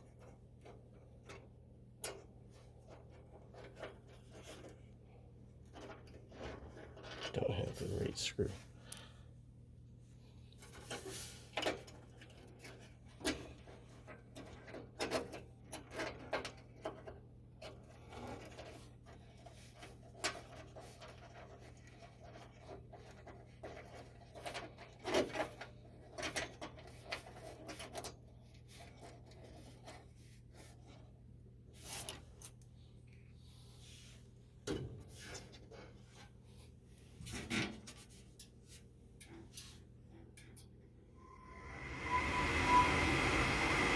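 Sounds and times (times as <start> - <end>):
steady low hum: 41.2 - 43.9.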